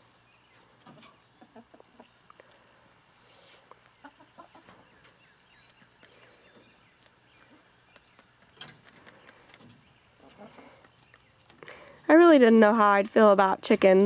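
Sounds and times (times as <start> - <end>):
hens clucking: 0.5 - 11.2.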